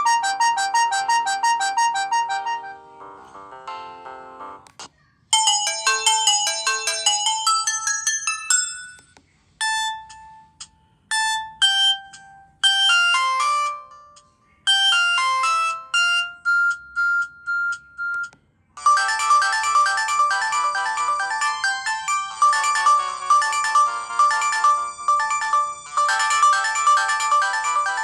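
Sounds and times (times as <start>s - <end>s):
mobile phone ringtones: 5.4s - 10.5s, 11.1s - 28.0s.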